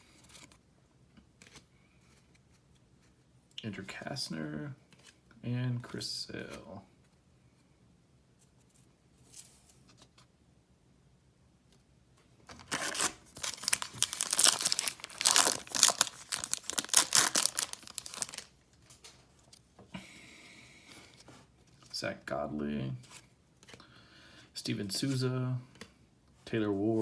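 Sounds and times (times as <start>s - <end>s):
wrapper tearing and crinkling: 12.5s - 18.5s.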